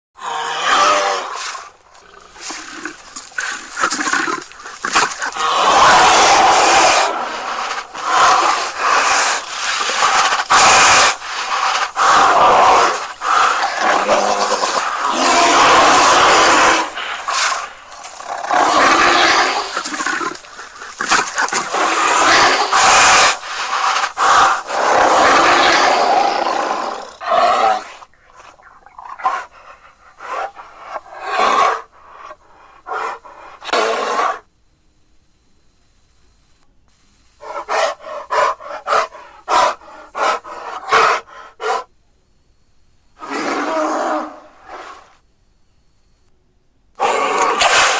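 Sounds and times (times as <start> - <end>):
bear calling: 0.2 - 34.4.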